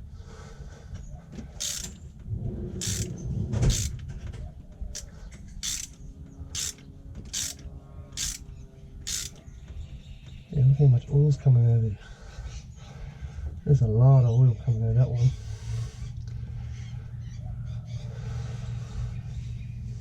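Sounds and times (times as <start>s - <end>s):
ratchet wrench clicking: 1.6s - 2.0s, 2.8s - 3.1s, 3.7s - 4.0s, 5.0s - 6.0s, 6.6s - 8.5s, 9.1s - 9.4s.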